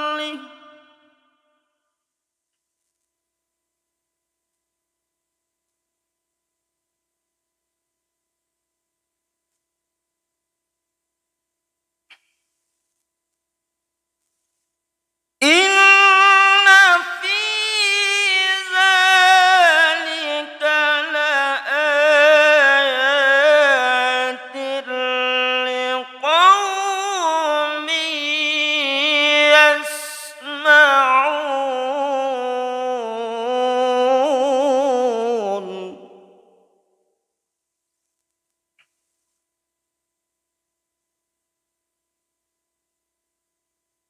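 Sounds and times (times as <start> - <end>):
man reciting melodically: 0.0 - 0.9, 15.4 - 36.4.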